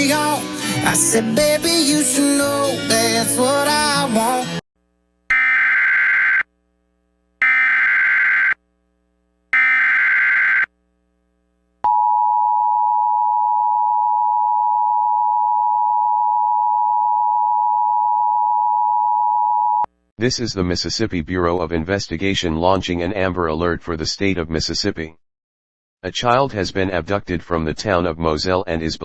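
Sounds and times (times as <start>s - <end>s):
alert data bursts: 9.6s - 10.7s.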